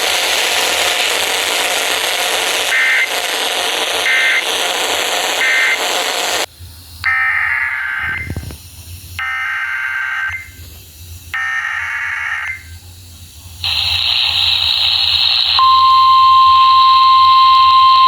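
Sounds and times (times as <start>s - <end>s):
emergency alert data bursts: 0.0s - 8.4s, 9.2s - 10.6s, 11.3s - 12.8s, 13.6s - 18.0s
radio static hiss: 0.0s - 9.3s, 12.8s - 15.8s.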